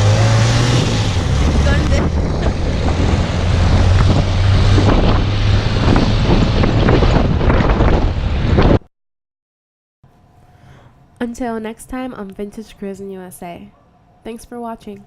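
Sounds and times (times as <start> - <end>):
wind buffeting microphone: 0.0 - 8.8
vehicle engine rumble: 0.0 - 8.9.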